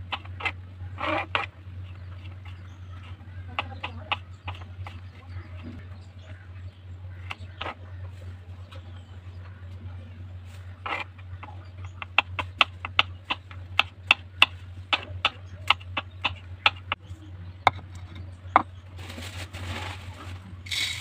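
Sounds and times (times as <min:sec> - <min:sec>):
soft rustling: 0:18.9 - 0:21.0.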